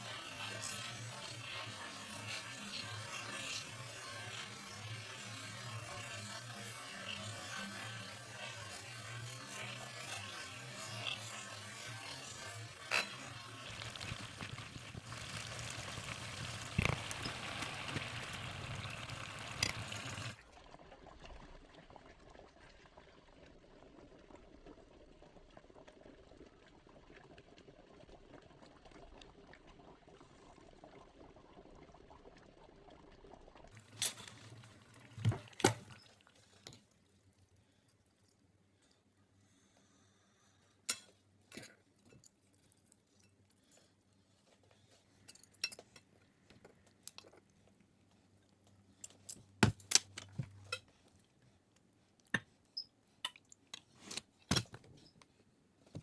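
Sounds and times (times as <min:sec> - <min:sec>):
liquid cooking hiss: 0:12.8 - 0:20.4.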